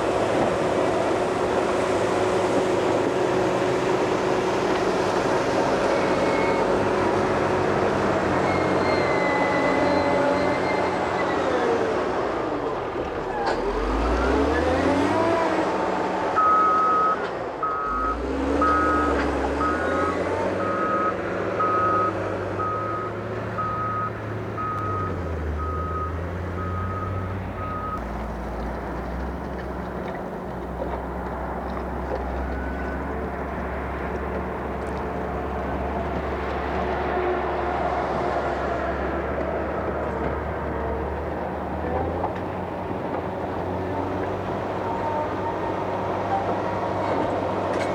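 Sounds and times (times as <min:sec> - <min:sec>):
diesel engine revving: 0:00.0 - 0:16.9, 0:17.6 - 0:47.9
reversing alarm beeping: 0:16.4 - 0:28.0.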